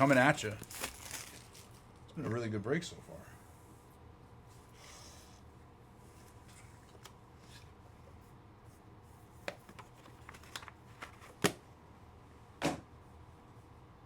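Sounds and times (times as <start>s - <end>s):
cards crinkling and clicking: 0.0s - 1.9s, 9.5s - 11.6s
faint steady hum: 0.0s - 14.0s.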